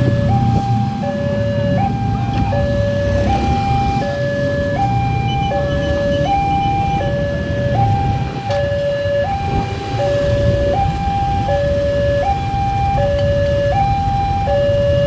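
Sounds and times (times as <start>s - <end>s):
level-crossing two-tone alarm: 0.0s - 15.0s
low rumble of traffic: 0.0s - 15.0s.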